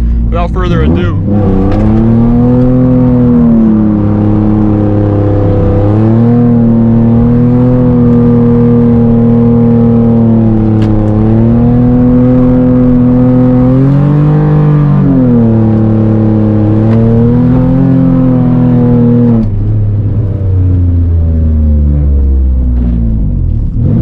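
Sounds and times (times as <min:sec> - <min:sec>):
car engine revving high: 0:00.0 - 0:24.0.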